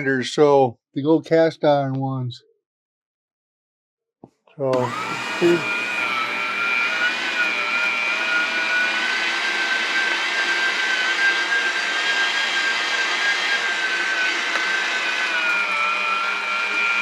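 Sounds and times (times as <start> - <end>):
electric meat grinder whining: 4.7 - 17.0.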